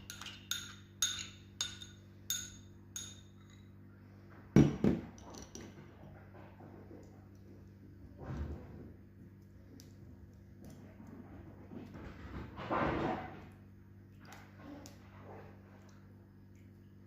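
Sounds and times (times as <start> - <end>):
utensils tapping a bowl: 0.0 - 3.7.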